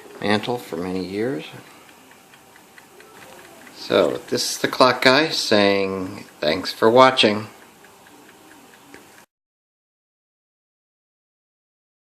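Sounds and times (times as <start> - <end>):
clock ticking: 0.0 - 9.3.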